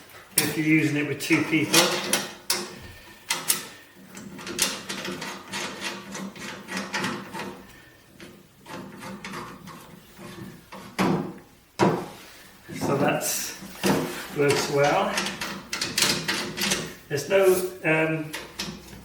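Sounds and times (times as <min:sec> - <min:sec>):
clicks knocks and rattles: 0:13.8 - 0:17.0, 0:18.3 - 0:19.0.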